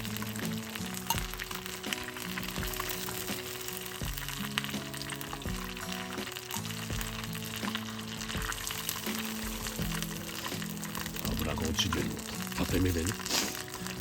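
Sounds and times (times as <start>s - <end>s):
light background music: 0.0s - 14.0s
oil sizzling and crackling: 0.0s - 14.0s.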